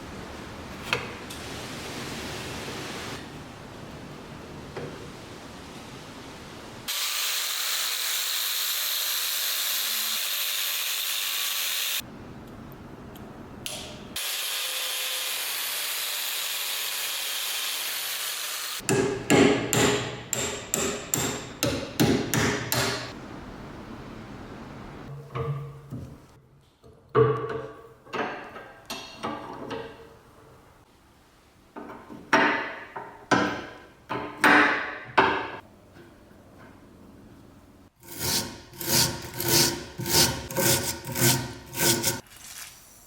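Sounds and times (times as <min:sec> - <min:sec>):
sharp metallic knocks: 0:18.8 - 0:23.2.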